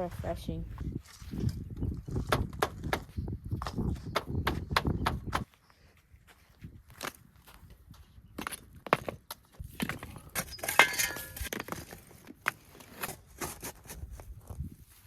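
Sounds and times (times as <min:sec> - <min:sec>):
footsteps on sand: 0:00.0 - 0:02.4, 0:05.4 - 0:08.2.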